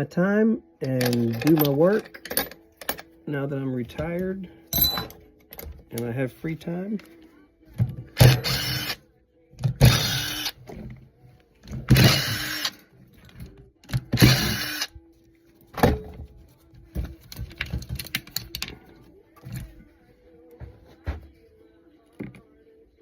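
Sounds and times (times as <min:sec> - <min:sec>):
metal parts clicking and clattering: 0:00.8 - 0:03.1, 0:04.7 - 0:06.0, 0:17.1 - 0:19.7
power drill whirring: 0:08.2 - 0:09.0, 0:09.8 - 0:10.6, 0:11.9 - 0:12.8, 0:14.2 - 0:14.9.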